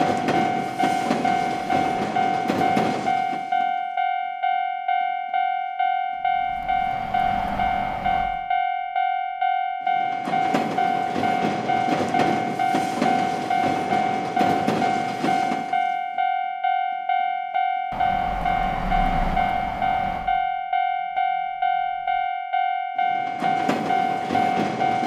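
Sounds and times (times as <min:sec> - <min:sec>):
train rushing past: 0:00.0 - 0:03.6, 0:06.2 - 0:08.6, 0:10.1 - 0:15.9, 0:17.9 - 0:20.6
railroad crossing bell ringing: 0:00.0 - 0:25.0
vehicle rumbling past: 0:17.9 - 0:20.4.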